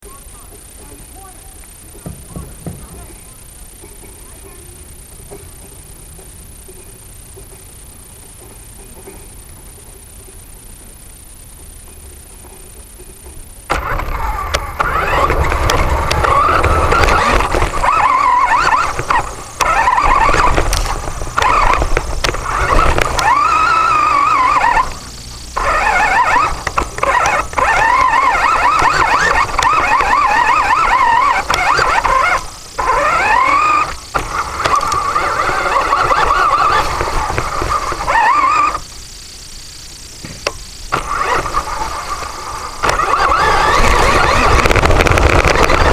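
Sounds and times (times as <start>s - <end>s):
toy rover motor whining: 13.7s - 39.1s, 40.4s - 45.9s.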